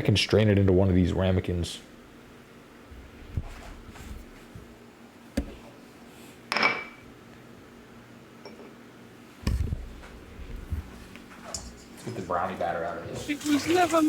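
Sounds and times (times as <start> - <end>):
dishes clinking: 6.5 - 7.0, 8.4 - 8.8, 11.4 - 12.3.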